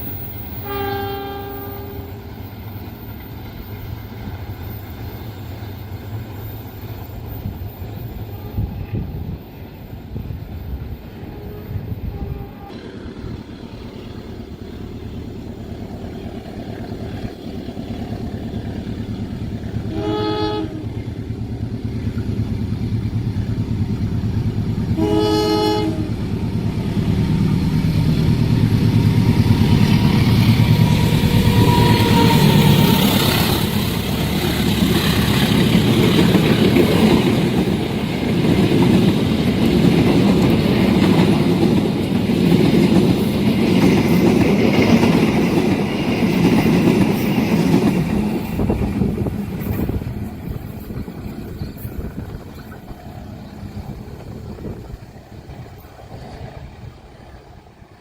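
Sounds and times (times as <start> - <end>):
train wheels rattling on rails: 0.0 - 58.0
train horn blasts: 0.6 - 2.4, 8.2 - 9.4, 11.1 - 12.9, 19.8 - 21.2, 24.9 - 26.4, 29.3 - 33.8.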